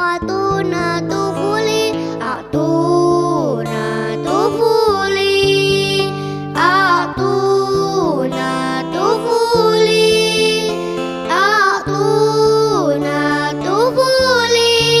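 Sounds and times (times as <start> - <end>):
wordless song melody over chords: 0.0 - 15.0.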